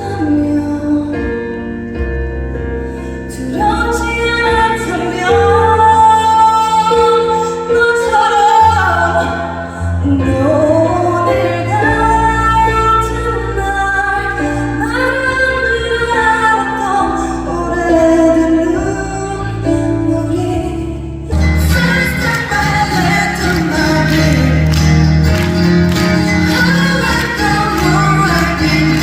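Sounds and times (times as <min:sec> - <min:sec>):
woman singing: 0:00.0 - 0:02.1, 0:03.3 - 0:29.0
steady bass and chords: 0:00.0 - 0:29.0.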